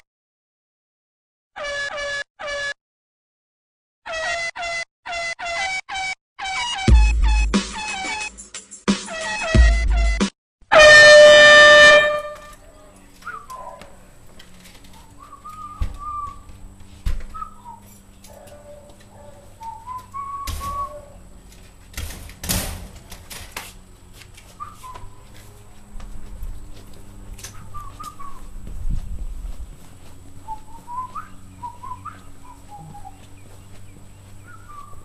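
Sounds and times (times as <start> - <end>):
air horn blast: 1.6 - 2.8, 4.1 - 5.8, 10.7 - 12.6
music: 5.3 - 10.3
faint whistling chirps: 13.2 - 13.8, 15.0 - 16.5, 17.3 - 17.9, 19.6 - 21.2, 24.6 - 25.2, 30.4 - 33.2, 34.4 - 35.0.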